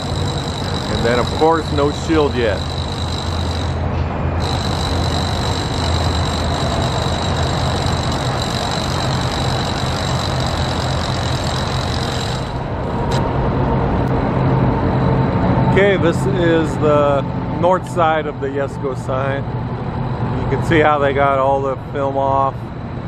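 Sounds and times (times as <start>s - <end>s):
traffic and engine hum: 0.0s - 23.0s.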